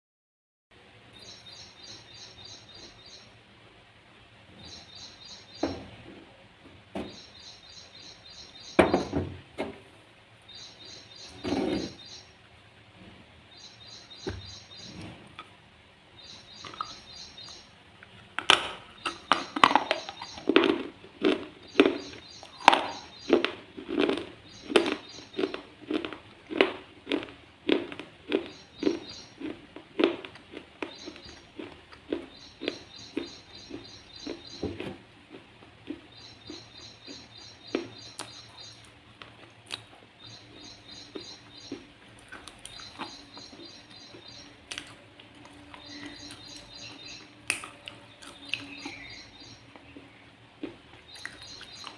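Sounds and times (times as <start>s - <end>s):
bird chirping trills: 1.1s - 3.4s, 4.5s - 5.8s, 7.0s - 9.3s, 10.4s - 12.4s, 13.5s - 15.1s, 16.2s - 17.8s, 18.8s - 20.9s, 21.6s - 26.0s, 28.3s - 29.6s, 30.8s - 34.8s, 36.0s - 38.9s, 40.2s - 50.4s, 51.0s - 51.9s
slate crunching while chewed: 16.6s - 51.9s.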